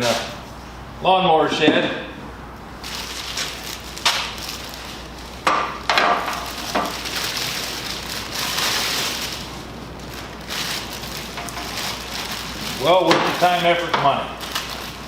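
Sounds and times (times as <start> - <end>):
rustling and scraping: 2.8 - 15.0
hard objects knocking and clattering: 5.4 - 7.0.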